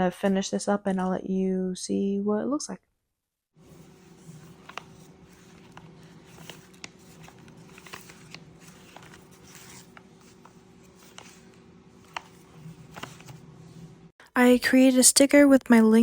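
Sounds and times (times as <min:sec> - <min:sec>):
steady low hum: 0:03.6 - 0:14.2
small clicks and rustles: 0:03.7 - 0:13.4.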